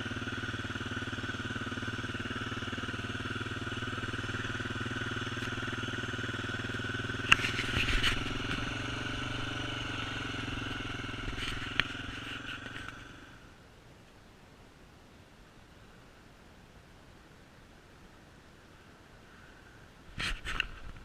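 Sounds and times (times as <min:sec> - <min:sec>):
motorcycle engine running: 0:00.0 - 0:13.5.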